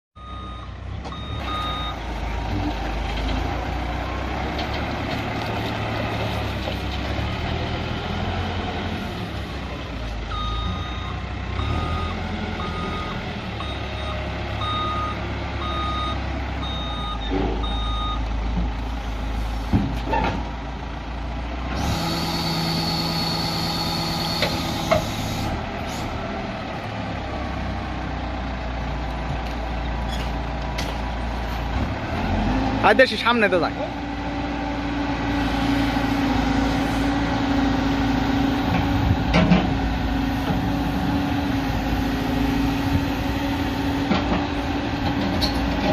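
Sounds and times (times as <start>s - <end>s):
reversing alarm beeping: 0.2s - 2.0s, 10.3s - 18.3s, 21.8s - 25.4s
backhoe diesel engine running: 0.2s - 45.9s.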